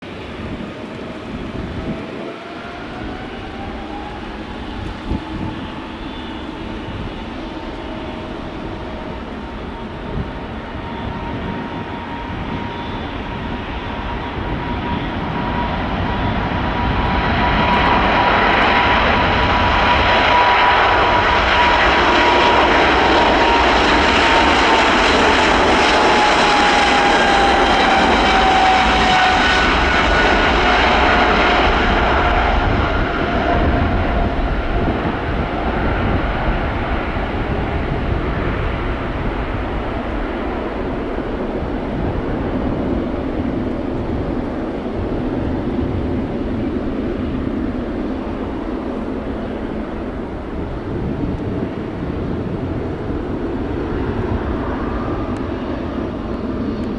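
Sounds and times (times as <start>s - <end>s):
aircraft engine passing by: 0.0s - 56.9s.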